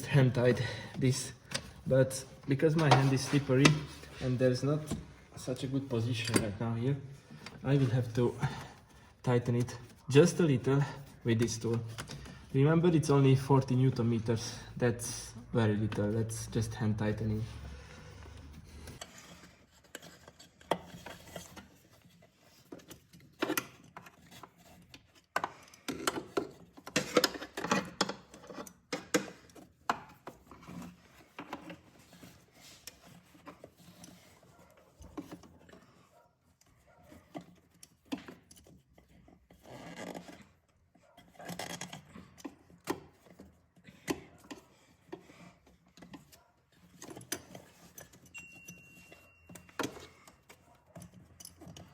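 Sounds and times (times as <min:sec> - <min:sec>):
tool clicking and knocking: 0:06.2 - 0:06.6.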